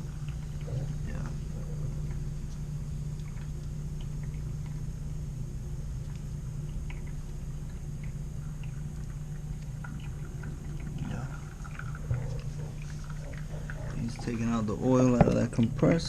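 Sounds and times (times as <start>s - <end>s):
low machine hum: 0.0s - 16.0s
oil gurgling through hose: 6.8s - 16.0s.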